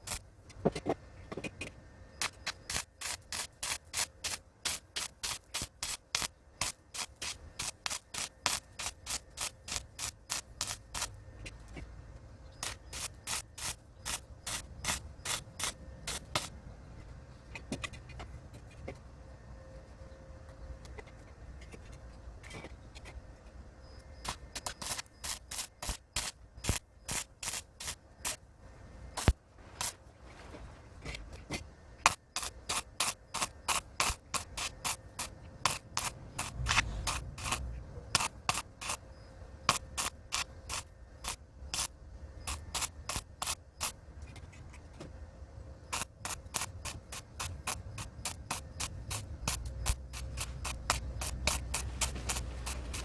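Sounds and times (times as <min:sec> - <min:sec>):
arc welding crackles: 0:00.0 - 0:00.3, 0:02.2 - 0:11.2, 0:12.6 - 0:16.5, 0:24.2 - 0:28.4, 0:32.0 - 0:39.0, 0:39.7 - 0:41.9, 0:42.5 - 0:44.0, 0:45.9 - 0:53.0.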